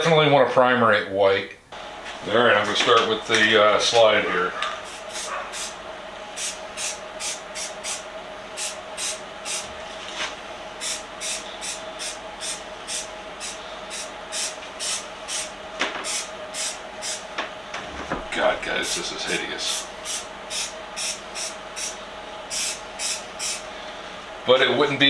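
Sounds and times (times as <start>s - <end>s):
faint hum: 0.0s - 25.0s
spray paint can hissing: 10.8s - 15.5s, 16.1s - 17.2s, 19.7s - 23.6s.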